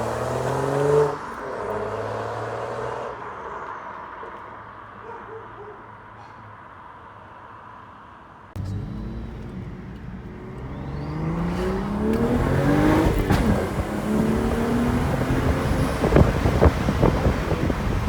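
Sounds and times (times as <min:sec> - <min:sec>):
car engine accelerating hard: 0:00.0 - 0:03.1, 0:08.6 - 0:18.0
exhaust cracks: 0:08.6 - 0:18.0.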